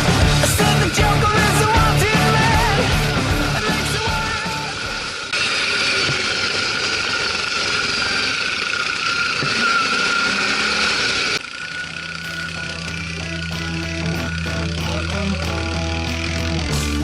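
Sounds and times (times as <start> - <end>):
rock music: 0.0 - 5.4, 10.6 - 17.0
atv engine droning: 0.0 - 17.0.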